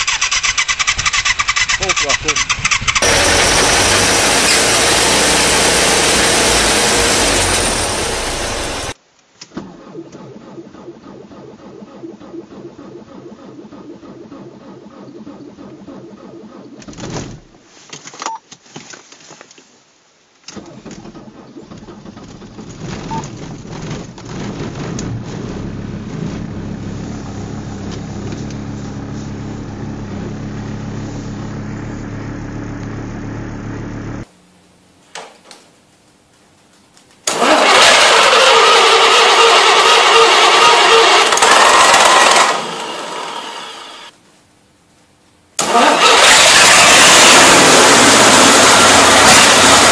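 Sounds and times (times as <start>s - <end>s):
engine running: 0.0s - 9.0s, 9.7s - 17.5s, 20.8s - 34.8s, 37.2s - 44.2s, 45.6s - 49.9s
loud noise: 2.9s - 9.0s, 45.6s - 49.9s.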